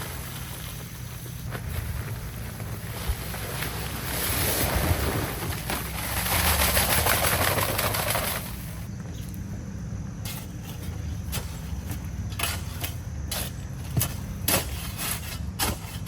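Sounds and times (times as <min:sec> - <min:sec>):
dry concrete mix pouring: 0:00.0 - 0:08.5
low engine hum: 0:00.0 - 0:16.0.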